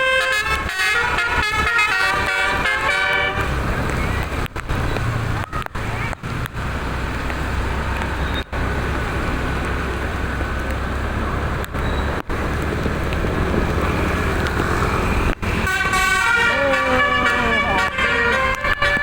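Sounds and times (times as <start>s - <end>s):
bus engine humming: 0.0s - 19.0s
road and traffic noise: 0.0s - 19.0s.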